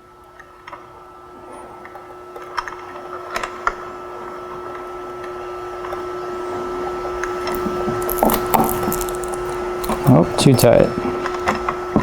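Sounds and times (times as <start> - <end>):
steady hum: 4.2 - 12.0.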